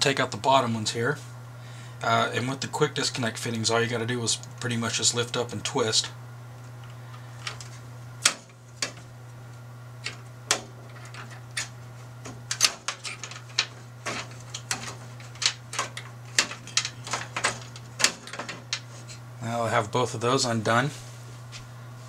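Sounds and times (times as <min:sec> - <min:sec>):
steady low hum: 0:00.0 - 0:22.0
fittings clicking apart: 0:06.8 - 0:09.0, 0:10.0 - 0:19.2.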